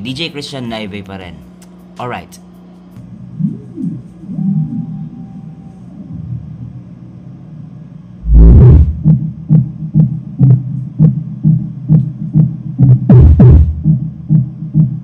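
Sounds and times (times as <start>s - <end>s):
quiet low hum: 1.2s - 15.0s
subwoofer deep boom: 8.2s - 10.6s, 12.8s - 14.0s
steady kick drum: 8.2s - 15.0s.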